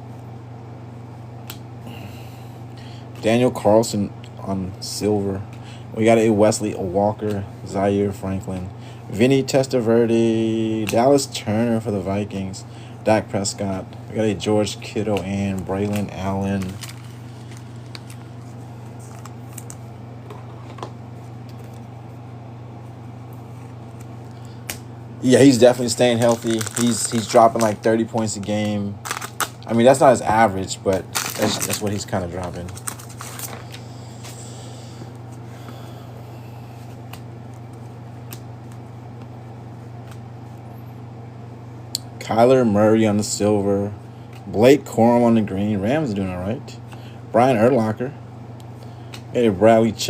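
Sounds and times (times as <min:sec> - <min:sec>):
low electrical hum: 0:00.0 - 0:50.0
trading cards flipped by hand: 0:15.1 - 0:20.8.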